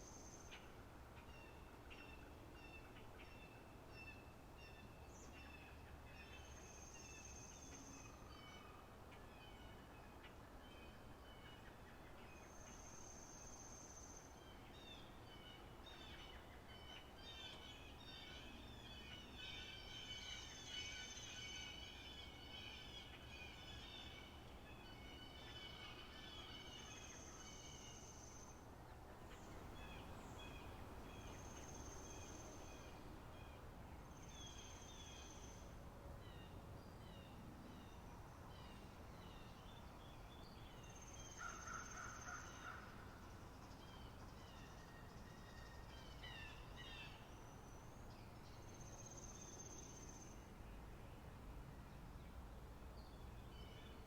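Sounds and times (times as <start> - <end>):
small birds chirping: 29.2 - 37.3.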